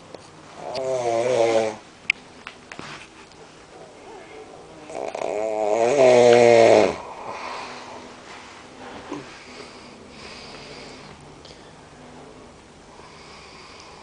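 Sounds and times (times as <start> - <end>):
man snoring: 0.6 - 1.8, 4.9 - 7.7
quiet breathing: 6.9 - 14.0.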